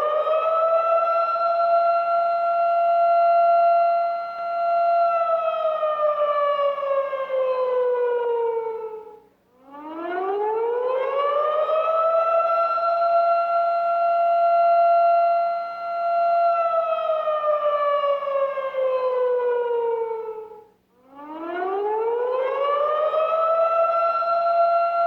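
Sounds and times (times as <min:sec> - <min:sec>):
warning siren wailing: 0:00.0 - 0:25.0.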